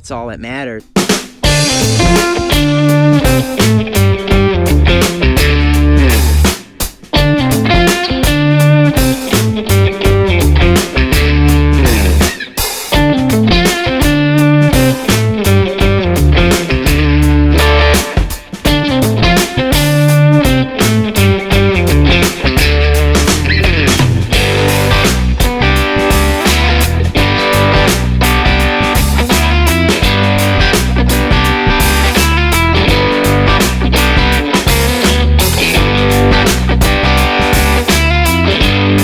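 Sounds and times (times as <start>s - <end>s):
rock music with electric guitar: 1.0s - 39.0s.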